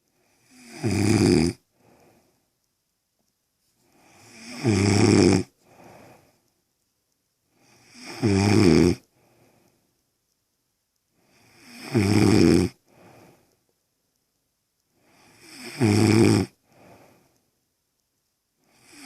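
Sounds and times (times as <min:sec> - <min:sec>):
woman snoring: 0:00.4 - 0:01.6, 0:04.0 - 0:05.5, 0:07.7 - 0:09.0, 0:11.4 - 0:12.8, 0:15.2 - 0:16.6, 0:18.7 - 0:19.0.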